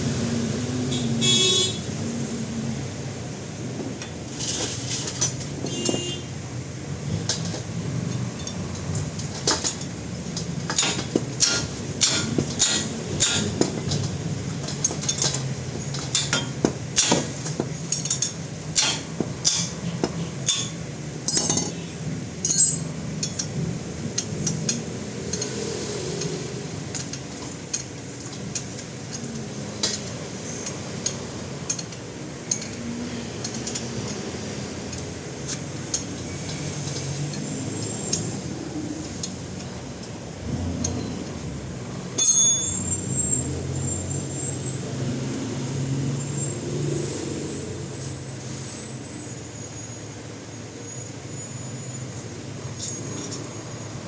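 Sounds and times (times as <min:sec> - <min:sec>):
metal hand tools clinking: 0:08.1 - 0:19.8, 0:20.4 - 0:23.5, 0:24.2 - 0:34.2, 0:42.2 - 0:43.2.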